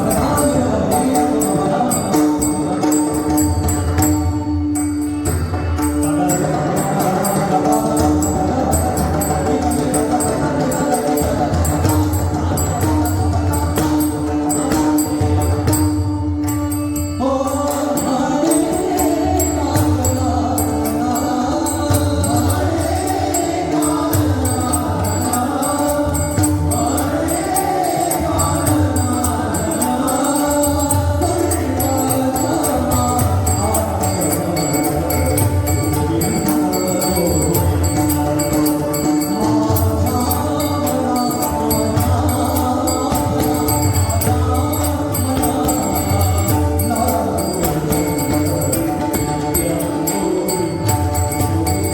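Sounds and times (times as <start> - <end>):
jingling percussion: 0.0 - 51.9
pakhawaj and tabla drumming: 0.0 - 51.9
voices singing: 16.7 - 51.9.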